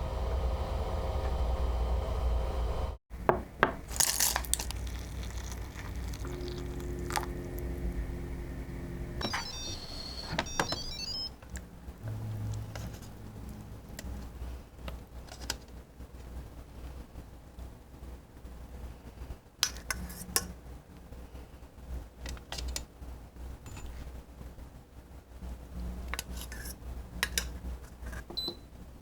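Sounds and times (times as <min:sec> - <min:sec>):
short high electronic beeps: 0:09.2 - 0:11.3.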